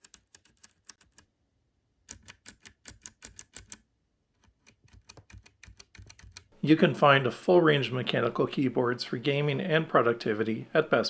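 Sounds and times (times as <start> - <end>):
mechanical keyboard typing: 0.0 - 1.3, 2.1 - 3.8, 4.4 - 6.5.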